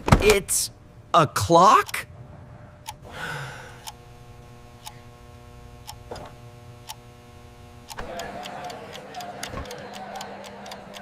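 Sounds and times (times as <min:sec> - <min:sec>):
clock ticking: 0:01.8 - 0:02.1, 0:03.8 - 0:04.0, 0:07.9 - 0:11.0
low hum: 0:02.0 - 0:08.4.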